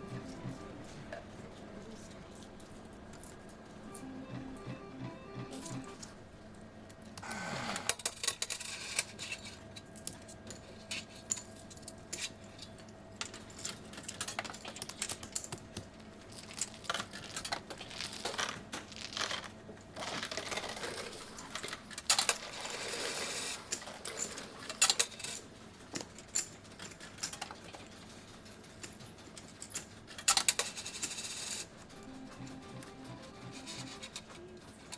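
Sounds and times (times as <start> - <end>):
gaming machines chiming: 0.0 - 1.1, 3.8 - 6.0, 31.9 - 34.4
coins clinking: 28.9 - 34.9.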